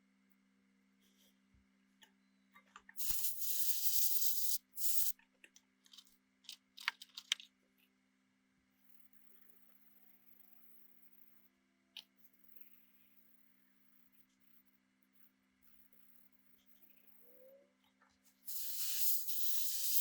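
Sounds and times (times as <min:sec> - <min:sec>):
loud hiss: 0:03.0 - 0:05.1, 0:18.5 - 0:20.0
small clicks and taps: 0:04.9 - 0:07.9.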